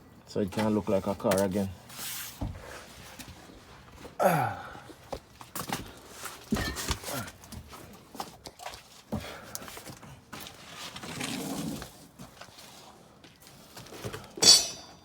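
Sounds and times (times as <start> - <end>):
sharp metallic clink: 14.4 - 15.0.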